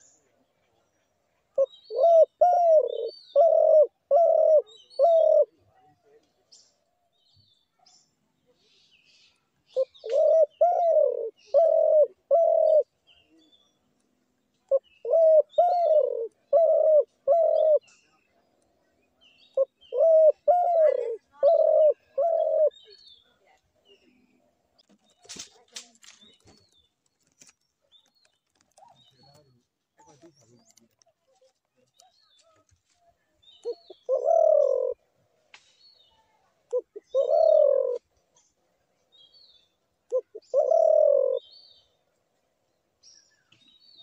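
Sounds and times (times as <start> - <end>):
small birds chirping: 0.0 - 44.0
dove cooing: 1.5 - 5.7, 9.7 - 13.0, 14.7 - 17.9, 19.6 - 23.0, 33.6 - 35.0, 36.7 - 38.0, 40.1 - 41.5.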